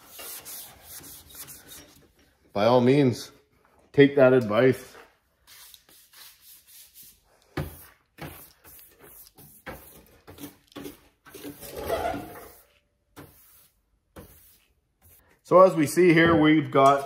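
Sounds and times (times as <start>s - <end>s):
sandpaper scratching strokes: 0.0s - 1.8s, 5.4s - 10.6s, 11.4s - 15.2s.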